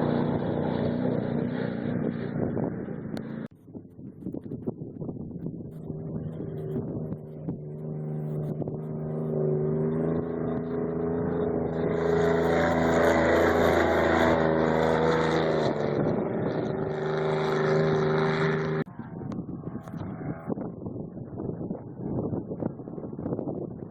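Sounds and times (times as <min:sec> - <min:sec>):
race vehicle engine at high revs: 0:00.0 - 0:03.5, 0:05.6 - 0:20.6.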